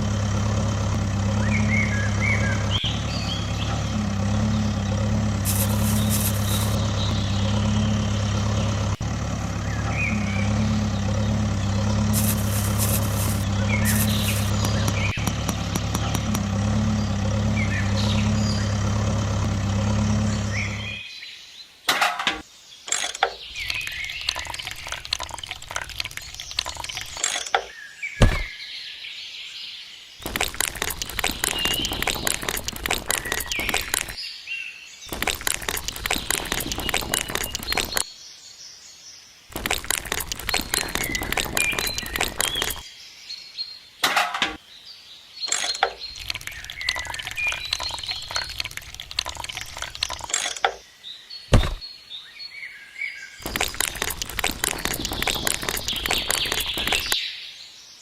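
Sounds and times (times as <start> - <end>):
birds chirping: 0.0 - 21.8, 22.4 - 38.8, 39.5 - 57.8
dense crackling clatter: 35.1 - 38.0, 39.5 - 42.8, 53.4 - 57.2
sharp knock: 51.5 - 51.8.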